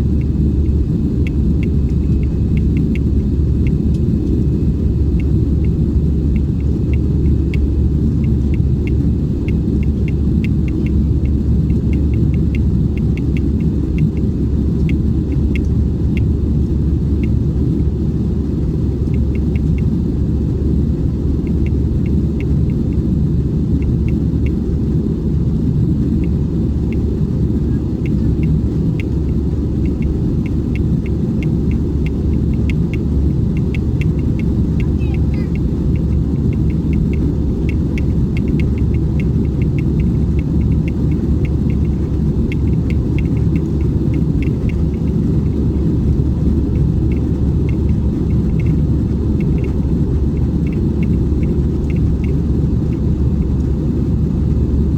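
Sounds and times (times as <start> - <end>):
airplane cabin engine roar: 0.0 - 54.9
faint ticks: 5.1 - 16.3, 26.2 - 53.7.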